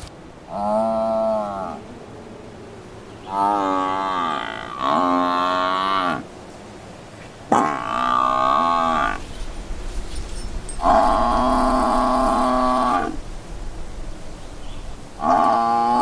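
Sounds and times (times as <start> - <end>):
water buffalo calling: 0.5 - 2.0, 3.2 - 6.3, 7.5 - 9.3, 10.8 - 13.2, 15.2 - 16.0.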